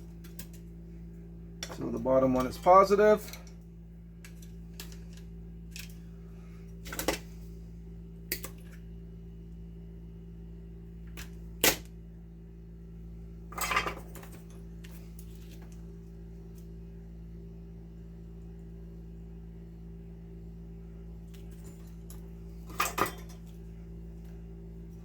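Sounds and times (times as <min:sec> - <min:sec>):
steady low hum: 0:00.0 - 0:25.0
small tools clicking and clattering: 0:04.2 - 0:06.0, 0:21.3 - 0:23.6.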